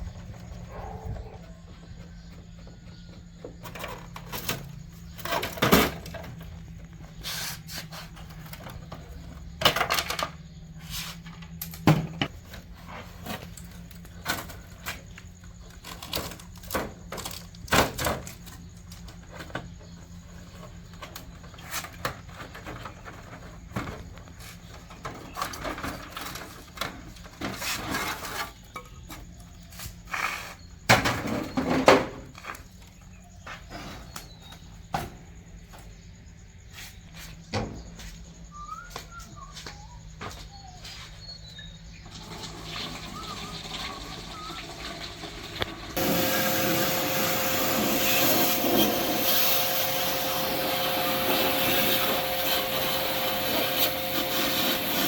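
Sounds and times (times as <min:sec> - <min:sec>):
plastic and metal parts clattering: 0:03.6 - 0:06.5, 0:11.3 - 0:19.8.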